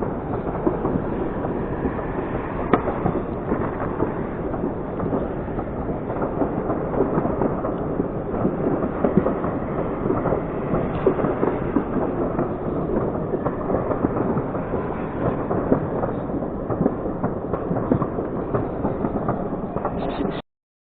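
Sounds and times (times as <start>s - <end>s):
fireworks crackling: 0.0s - 20.4s.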